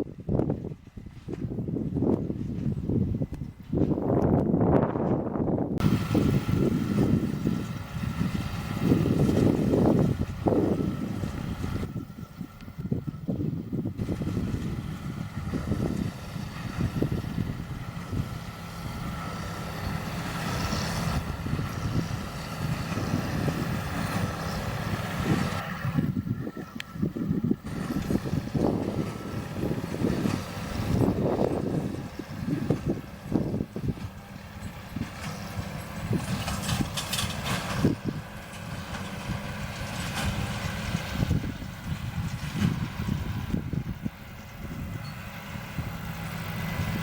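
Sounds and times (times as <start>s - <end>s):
tractor running: 0.0s - 47.0s
wind buffeting microphone: 0.0s - 47.0s
baler working: 0.2s - 47.0s
square baler baling straw: 27.0s - 47.0s.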